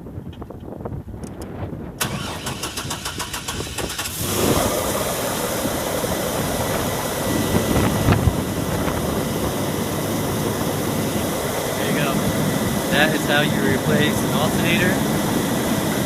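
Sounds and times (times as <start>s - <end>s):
starter motor cranking: 2.0s - 7.8s
car engine idling: 2.0s - 16.0s.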